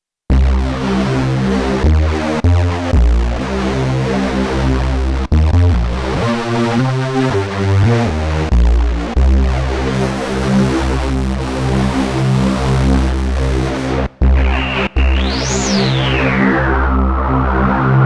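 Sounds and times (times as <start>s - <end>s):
synthesizer bass notes: 13.0s - 18.0s
layered electronic chord tone: 14.3s - 18.0s.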